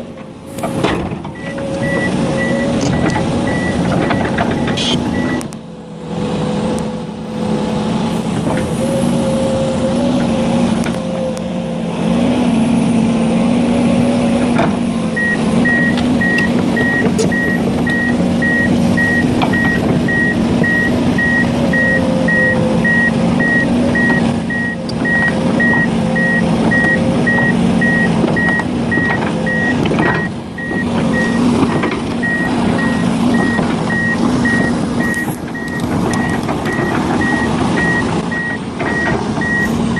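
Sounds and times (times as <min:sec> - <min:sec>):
diesel engine running: 0:00.0 - 0:39.9
reversing alarm beeping: 0:01.4 - 0:05.5, 0:15.2 - 0:39.8.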